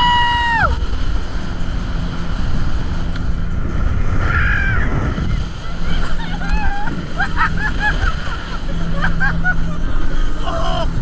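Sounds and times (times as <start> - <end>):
passengers screaming: 0.0 - 0.8, 4.2 - 4.9
wind on microphone: 0.0 - 10.0
boat engine rumble: 0.0 - 11.0.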